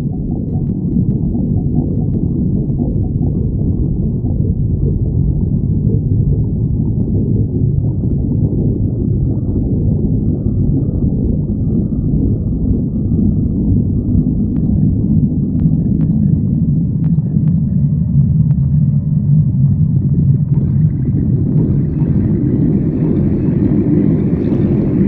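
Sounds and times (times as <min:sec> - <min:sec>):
stomach growling: 0:00.0 - 0:25.0.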